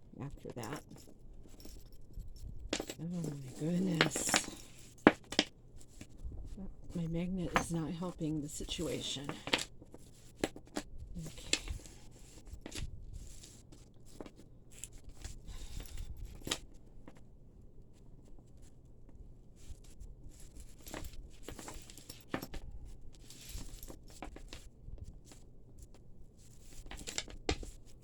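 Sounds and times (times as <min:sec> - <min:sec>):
rustling: 0:00.0 - 0:28.0
metal chains clicking and rattling: 0:00.2 - 0:05.5, 0:06.7 - 0:09.7, 0:11.2 - 0:12.1, 0:15.5 - 0:16.6, 0:20.6 - 0:24.6.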